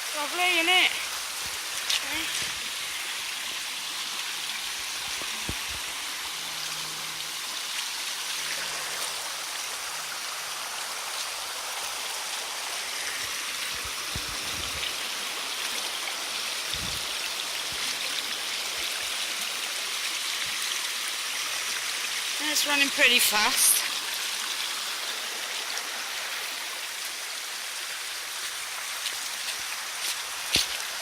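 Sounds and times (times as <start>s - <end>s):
stream rushing: 0.0s - 31.0s.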